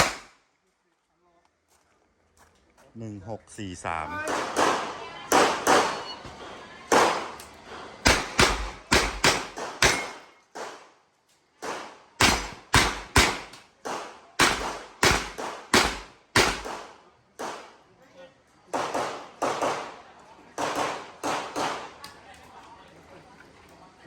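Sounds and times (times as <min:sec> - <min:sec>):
revolver gunshots: 0:00.0 - 0:00.4, 0:04.2 - 0:06.1, 0:06.9 - 0:07.4, 0:08.0 - 0:10.9, 0:11.6 - 0:17.8, 0:18.8 - 0:20.0, 0:20.6 - 0:21.9.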